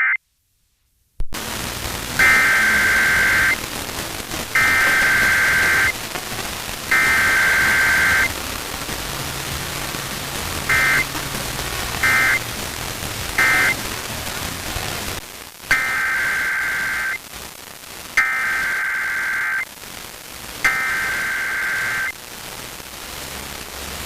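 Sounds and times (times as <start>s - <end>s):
static hiss: 0.0s - 24.0s
screeching digital data bursts: 2.2s - 3.6s, 4.4s - 6.0s, 6.9s - 8.4s, 10.6s - 11.2s, 12.0s - 12.6s, 13.3s - 13.8s, 15.7s - 17.2s, 18.2s - 19.7s, 20.6s - 22.2s.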